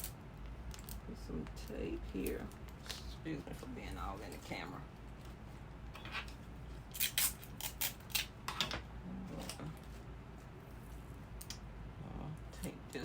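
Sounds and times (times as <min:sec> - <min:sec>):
adhesive tape ripping: 0:06.9 - 0:08.3.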